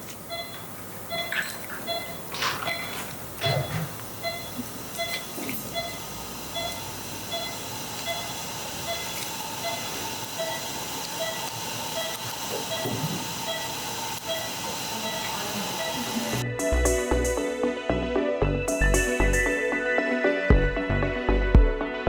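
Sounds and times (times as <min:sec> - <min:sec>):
steady hiss: 0:00.0 - 0:17.5
short electronic beeps: 0:00.3 - 0:02.2, 0:03.4 - 0:16.2.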